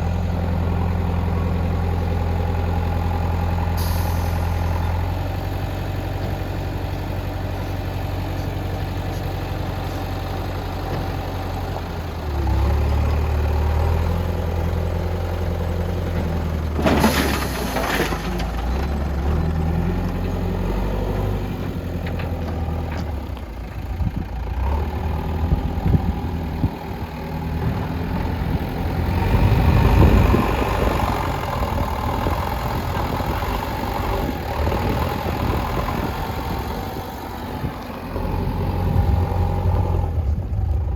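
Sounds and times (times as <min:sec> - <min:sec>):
diesel engine changing revs: 0:24.1 - 0:40.9.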